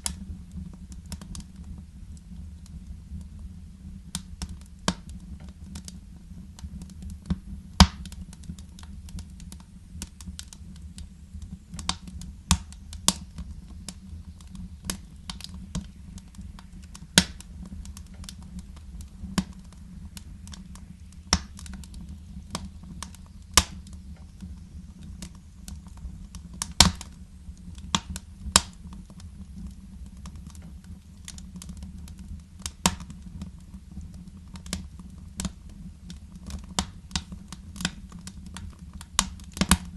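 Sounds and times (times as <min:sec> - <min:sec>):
wood fire crackling: 0:00.0 - 0:39.9
low rumble: 0:10.6 - 0:31.1.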